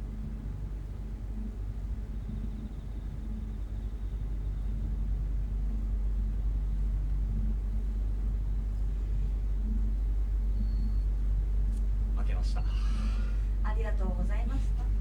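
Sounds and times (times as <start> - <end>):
low rumble with hum: 0.0 - 15.0.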